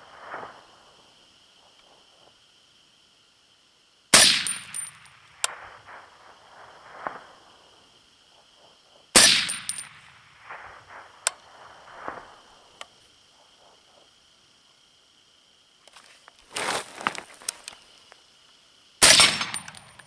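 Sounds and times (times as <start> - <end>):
suppressed rifle shots: 4.2 - 6.0, 9.2 - 10.8, 19.0 - 20.0.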